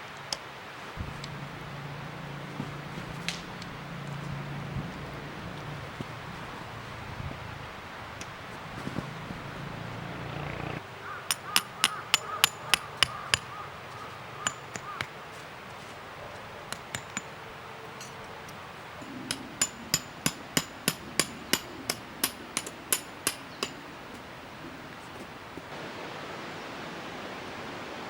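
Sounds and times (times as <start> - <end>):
hammer striking tent pegs: 11.3 - 13.5, 14.4 - 15.2, 19.0 - 23.8.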